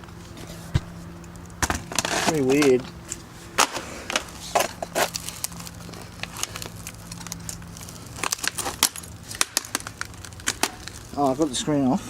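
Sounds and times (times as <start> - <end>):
plastic casing cracking and clicking: 3.6 - 11.4.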